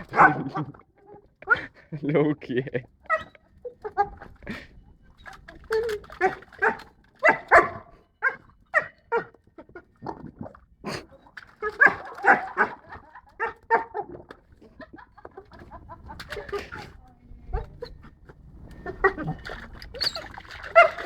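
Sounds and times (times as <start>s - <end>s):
dog barking into water: 0.0s - 1.6s, 5.4s - 14.8s, 18.8s - 21.0s.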